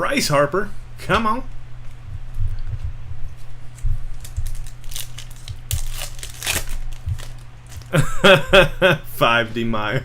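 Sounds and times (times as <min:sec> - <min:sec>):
steady low hum: 0:00.0 - 0:10.0
foil wrapper crinkling and tearing: 0:04.1 - 0:08.0.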